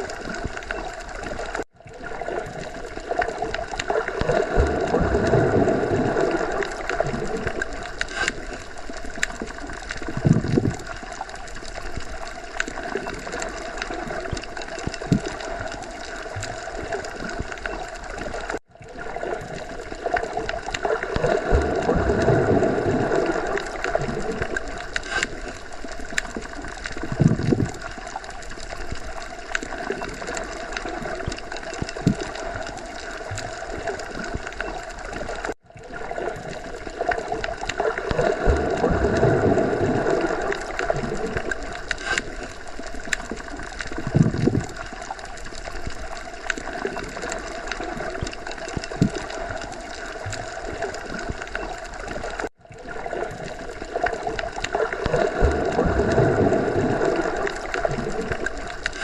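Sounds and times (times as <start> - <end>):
muffled underwater rush and gurgling: 0.0 - 59.0.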